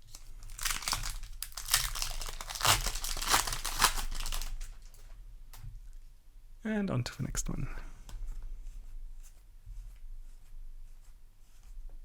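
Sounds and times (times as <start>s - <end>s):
foil wrapper crinkling and tearing: 0.0s - 5.0s.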